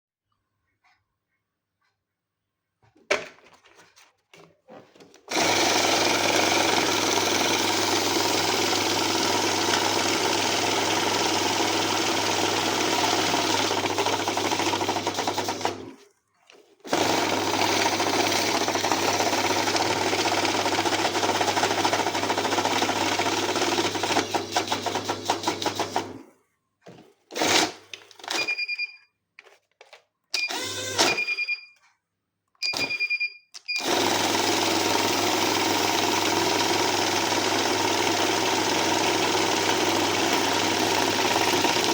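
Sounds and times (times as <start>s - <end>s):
banknote counting machine whirring: 5.3s - 15.9s, 16.9s - 26.2s, 33.8s - 41.9s
short electronic beeps: 31.1s - 31.8s, 32.6s - 33.8s.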